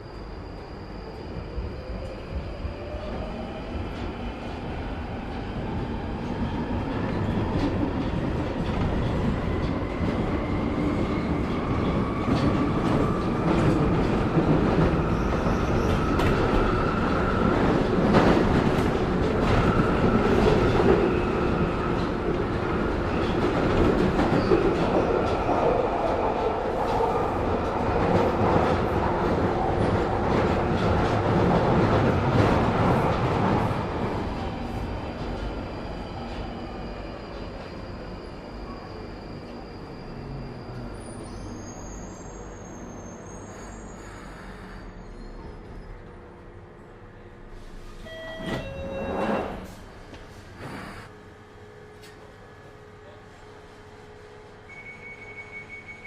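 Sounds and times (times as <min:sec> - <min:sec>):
train rumble: 0:00.0 - 0:38.9.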